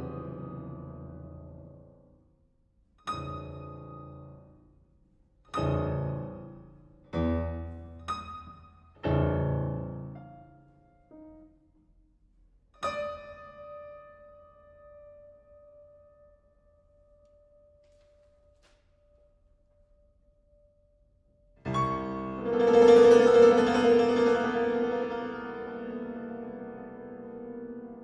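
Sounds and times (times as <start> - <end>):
soft piano notes: 5.5 - 11.6, 21.6 - 28.0
piano chords ringing: 21.6 - 28.0.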